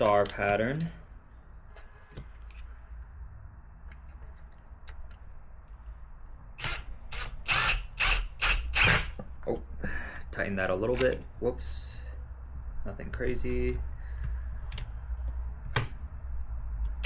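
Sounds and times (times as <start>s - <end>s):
screw scraping and rattling: 6.6s - 9.2s
screwdriver clicks: 6.6s - 9.2s.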